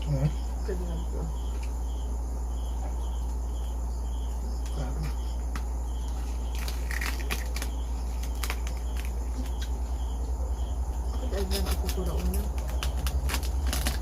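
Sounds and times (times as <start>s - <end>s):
crickets chirping: 0.0s - 14.0s
steady low hum: 0.0s - 14.0s
crunching bites of fried pork skin: 6.5s - 9.7s.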